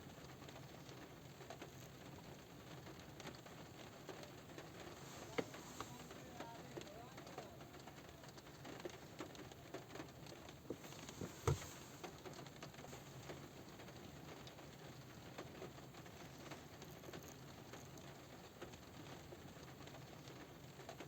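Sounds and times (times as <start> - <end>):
light rain on car roof: 0.0 - 21.0
drop tapping on roof: 10.6 - 12.1.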